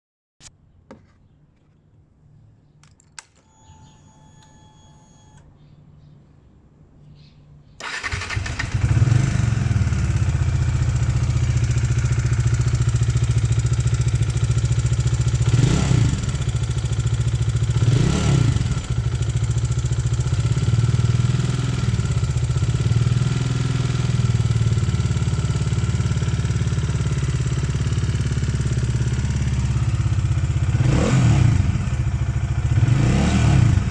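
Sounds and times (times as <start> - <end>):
short electronic tone: 3.4 - 5.4
motorcycle engine idling and revving: 7.8 - 33.9.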